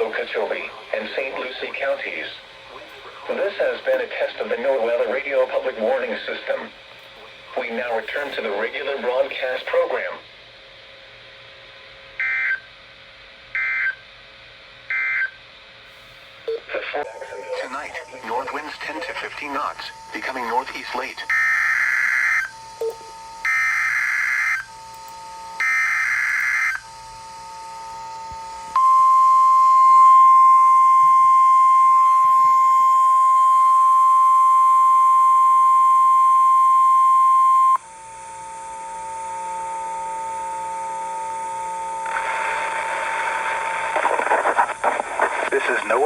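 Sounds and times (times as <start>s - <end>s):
faint steady tones: 0.0s - 9.8s, 16.5s - 46.0s
loud steady warning alarm tone: 17.0s - 42.2s.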